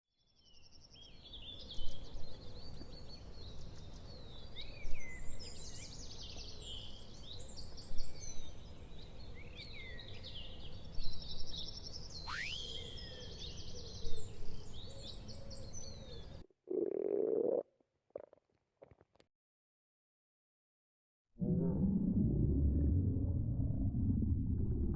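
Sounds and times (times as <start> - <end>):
birds chirping and trilling: 0.9 - 17.2
stomach growling: 16.7 - 19.2, 21.4 - 24.9.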